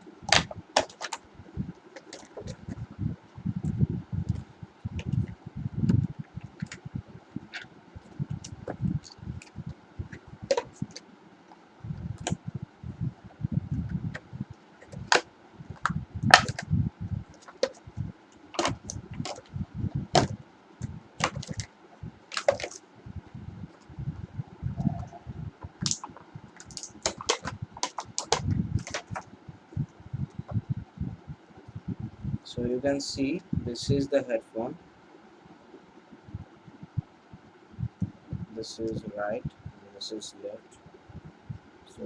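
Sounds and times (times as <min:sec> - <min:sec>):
packaging clicks and cracks: 0:00.3 - 0:01.2, 0:10.5 - 0:11.0, 0:14.8 - 0:16.6, 0:18.5 - 0:19.5, 0:20.2 - 0:21.7, 0:22.3 - 0:22.8, 0:25.8 - 0:29.3.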